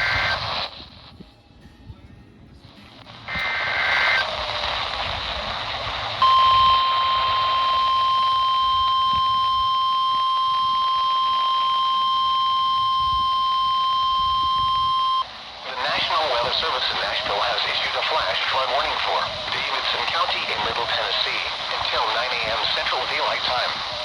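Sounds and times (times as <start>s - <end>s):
radio static: 0.0s - 1.1s, 3.0s - 24.0s
steady warning alarm tone: 6.2s - 17.4s
digital header tones: 6.2s - 19.0s.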